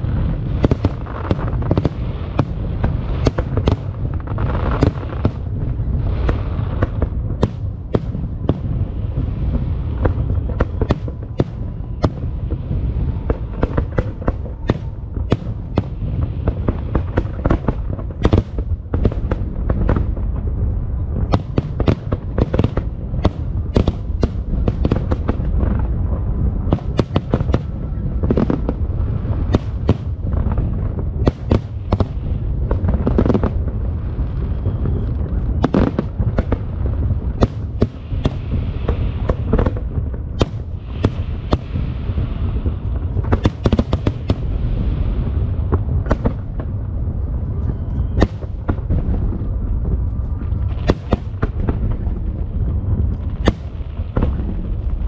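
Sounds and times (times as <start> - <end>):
fireworks bangs: 0.0 - 55.0
rumble of booms and crackle: 0.0 - 55.0.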